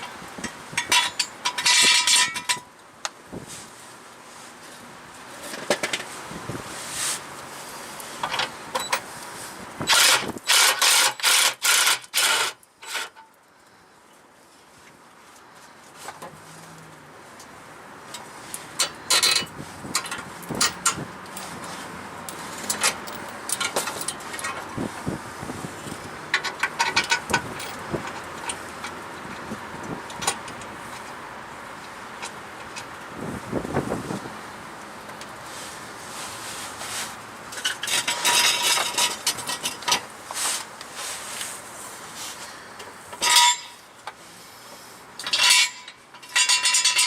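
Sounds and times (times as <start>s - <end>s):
tools and parts clanking: 0.0s - 2.7s, 5.4s - 6.2s, 8.2s - 9.1s, 9.8s - 13.4s, 18.1s - 25.2s, 25.8s - 29.5s, 30.1s - 31.1s, 37.5s - 40.7s, 42.8s - 44.2s, 45.2s - 47.0s.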